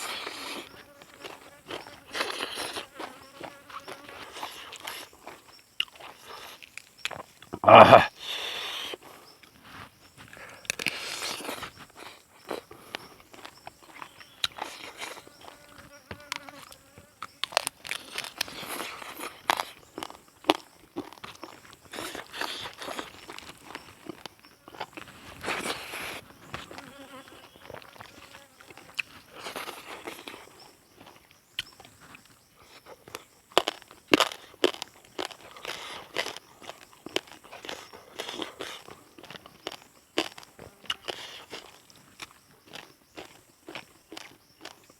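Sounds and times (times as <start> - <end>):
chewing and crunching food: 0.0 - 44.9.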